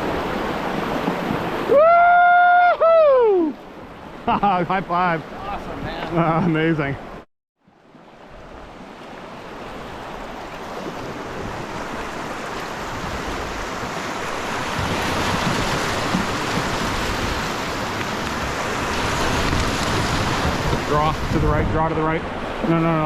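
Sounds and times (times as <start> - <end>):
whitewater rushing: 9.4 - 23.0
wind noise on microphone: 12.8 - 22.7.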